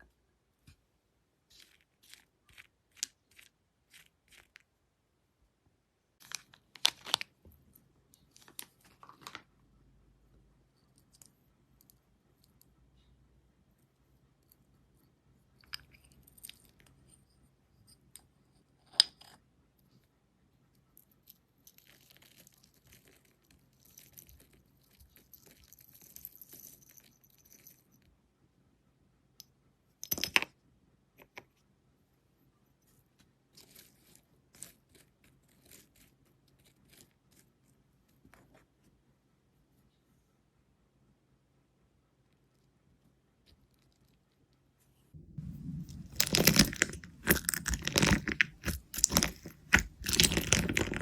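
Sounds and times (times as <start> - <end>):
slime popping: 45.2 - 51.0.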